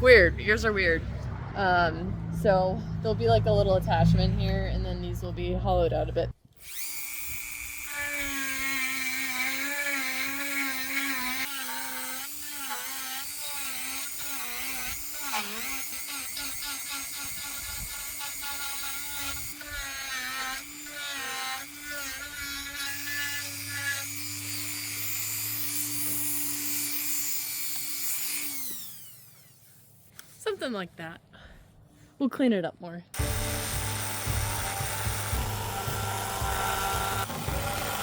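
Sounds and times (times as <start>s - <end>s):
power carving tool whining in wood: 6.6s - 30.3s, 33.2s - 38.0s.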